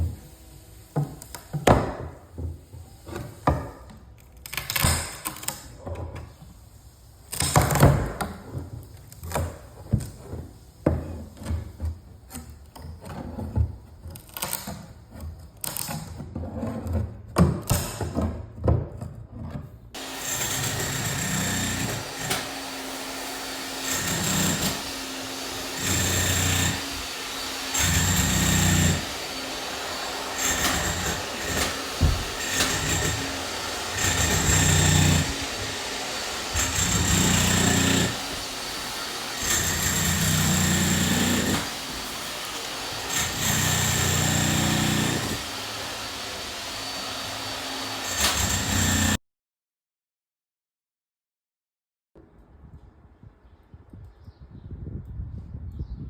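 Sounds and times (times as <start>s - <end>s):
tools knocking and scraping wood: 7.4s - 38.8s
power tool running in bursts: 20.0s - 49.2s.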